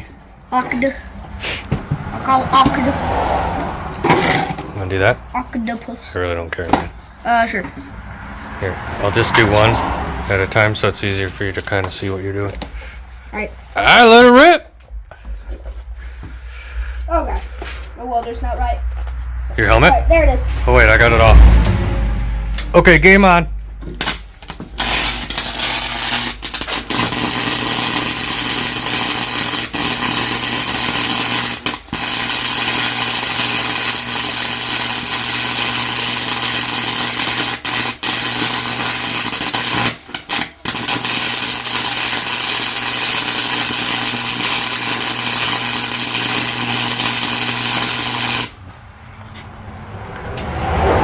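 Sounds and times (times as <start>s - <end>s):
arc welder crackling hiss: 24.8s - 48.5s.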